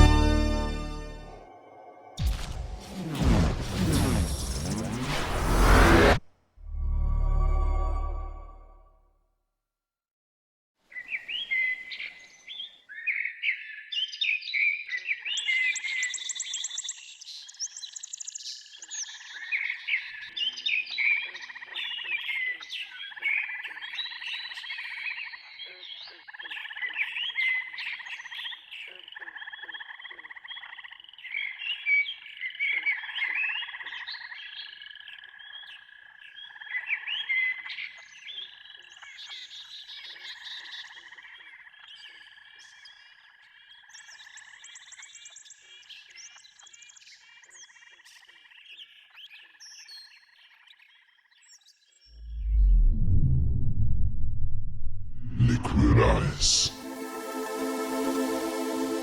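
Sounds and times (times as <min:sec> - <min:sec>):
frogs croaking in chorus: 0:20.5 - 0:31.6, 0:32.2 - 0:39.5, 0:40.1 - 0:45.2.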